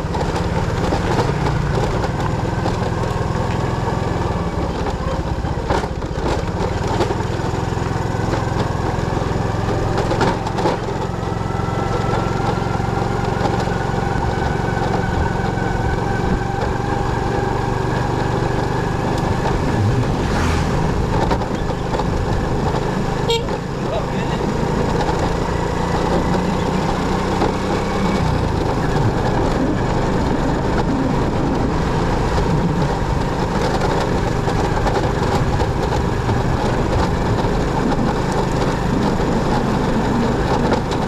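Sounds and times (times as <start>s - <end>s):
motorcycle engine running: 0.0s - 41.0s
faint rising whine: 19.5s - 21.3s.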